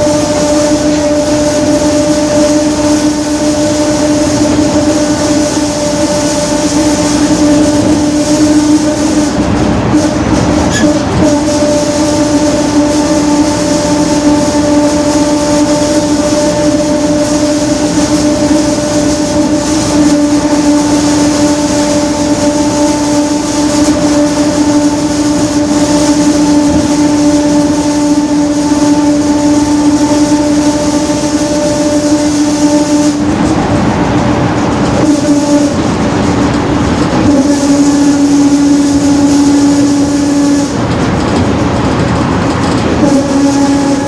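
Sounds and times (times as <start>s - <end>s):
bus running noise: 0.0s - 44.0s
rear differential howling: 0.0s - 44.0s.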